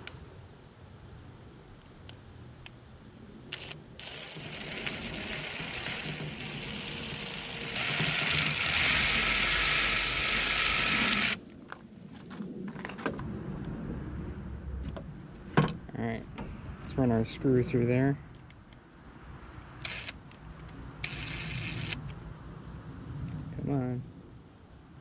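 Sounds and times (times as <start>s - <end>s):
power drill running: 3.5s - 11.4s, 19.8s - 20.1s, 21.0s - 22.0s.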